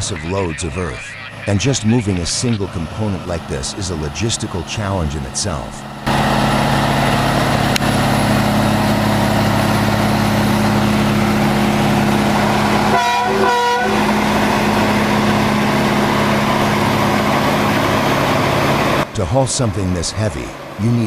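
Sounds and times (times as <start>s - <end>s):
truck diesel engine running: 0.0s - 21.0s
truck horn blasts: 11.0s - 18.6s.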